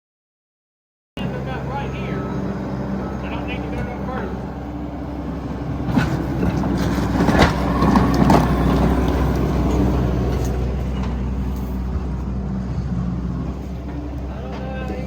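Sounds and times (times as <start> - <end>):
engine running: 1.2 - 15.0
knocks and clatters: 5.7 - 12.2.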